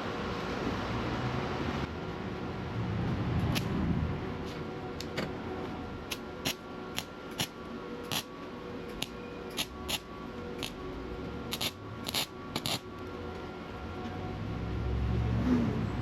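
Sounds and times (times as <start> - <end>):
welding crackles: 6.0 - 8.3, 8.9 - 10.8, 11.5 - 12.9.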